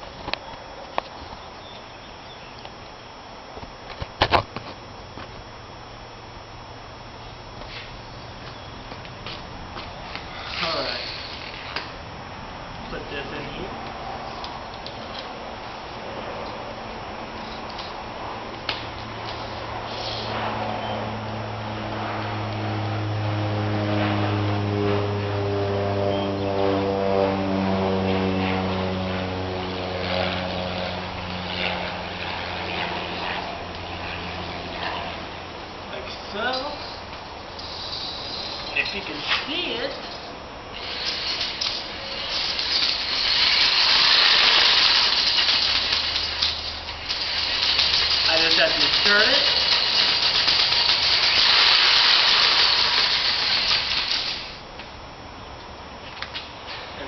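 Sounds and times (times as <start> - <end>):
low steady hum: 0.0 - 57.0
electric drill spinning pipe snake: 2.6 - 20.8, 28.0 - 54.7
electric drill motor humming: 40.7 - 54.7.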